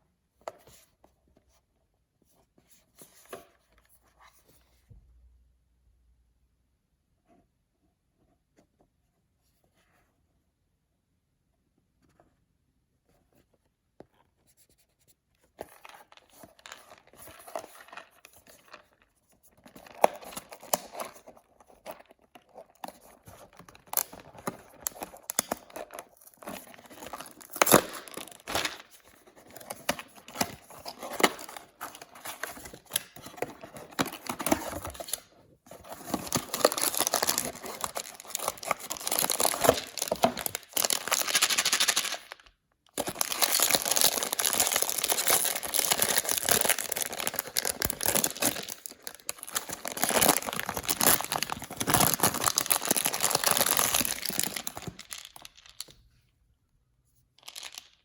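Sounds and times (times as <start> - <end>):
packaging crinkling and tearing: 19.6 - 55.9, 57.4 - 58.0.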